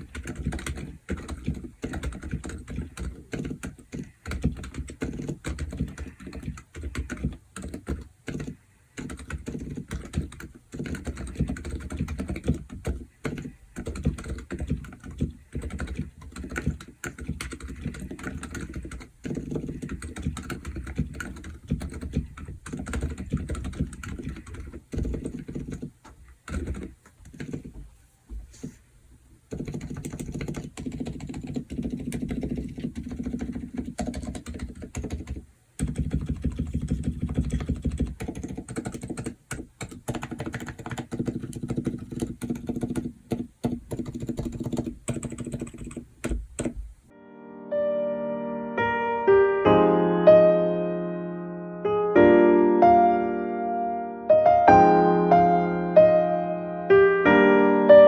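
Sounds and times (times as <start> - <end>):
low dull keyboard keystrokes: 0.0 - 27.8, 29.5 - 46.8.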